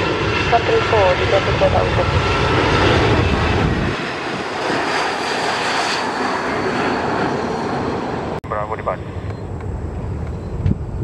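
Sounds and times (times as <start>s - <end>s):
deep rumble: 0.0s - 5.9s
airliner engine noise: 0.0s - 11.0s.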